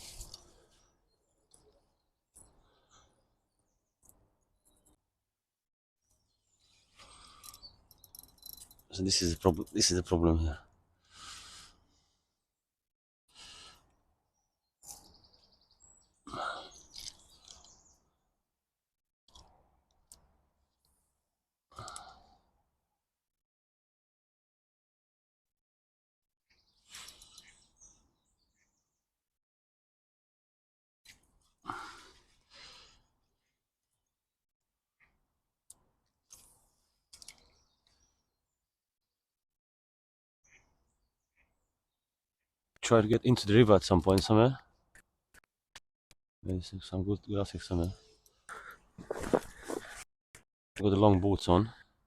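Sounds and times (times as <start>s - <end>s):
faint bird chirps: 26.5s - 29.0s, 40.4s - 41.8s.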